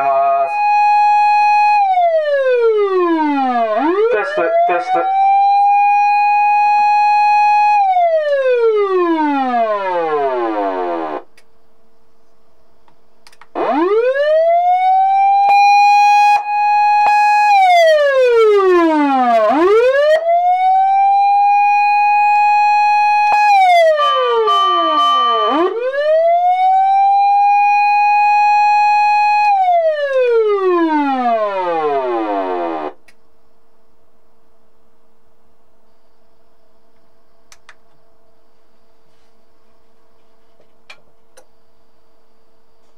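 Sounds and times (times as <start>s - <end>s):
wailing electronic siren: 0.0s - 11.2s, 13.5s - 33.0s.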